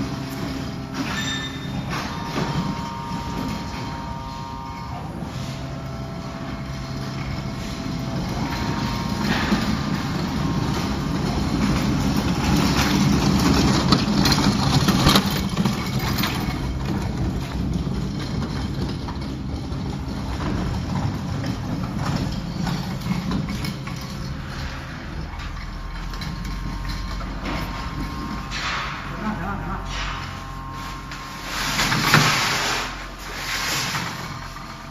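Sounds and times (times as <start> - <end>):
machinery humming: 0.0 - 34.9
noisy rush: 7.8 - 32.2.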